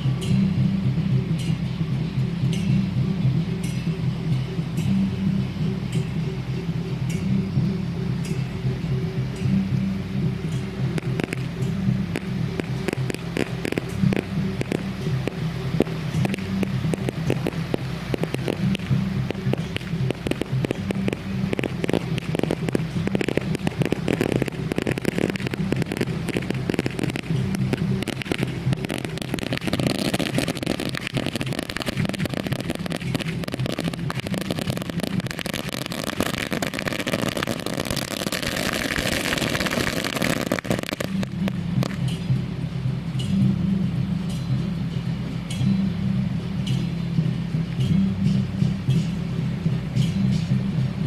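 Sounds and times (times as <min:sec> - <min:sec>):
steady low rumble: 0:00.0 - 0:51.0
firecrackers crackling: 0:10.5 - 0:42.3.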